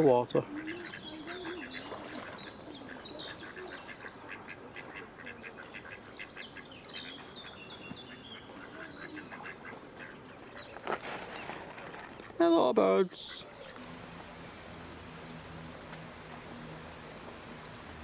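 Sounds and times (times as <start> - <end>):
ducks quacking: 0.4 - 10.8.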